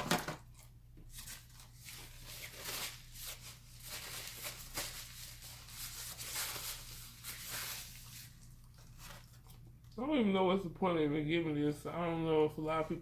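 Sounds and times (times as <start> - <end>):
low steady hum: 0.0 - 13.0
chewing and handling food: 0.5 - 10.0.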